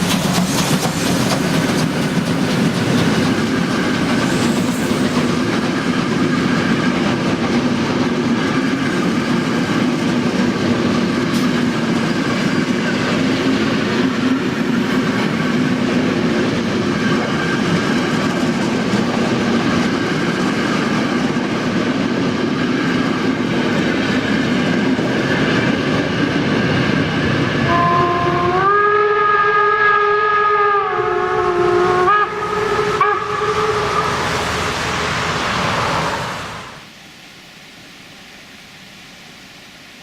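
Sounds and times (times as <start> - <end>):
wheels clattering on rails: 0.0 - 27.7
steam whistle short toots: 27.6 - 34.4
steam whistle blast: 27.6 - 35.2.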